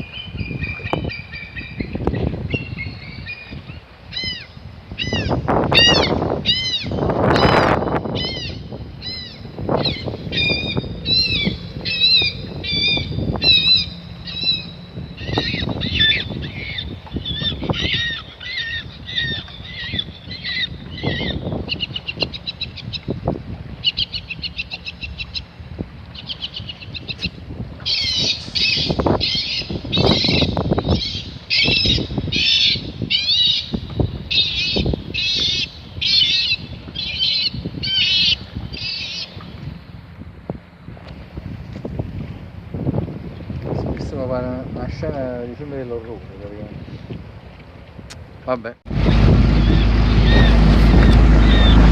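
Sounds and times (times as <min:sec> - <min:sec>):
amplified bird of prey calls: 0:04.1 - 0:23.0, 0:26.2 - 0:33.7, 0:49.6 - 0:51.9.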